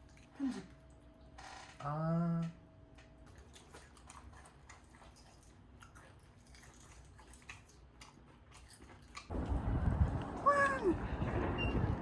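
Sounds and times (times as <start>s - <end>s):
chewing and eating clicks: 3.0s - 9.3s.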